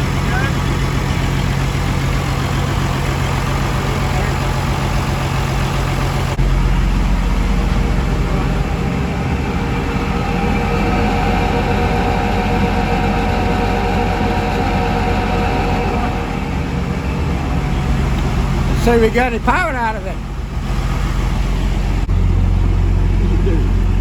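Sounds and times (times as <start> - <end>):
engine running under load: 0.0 - 24.0.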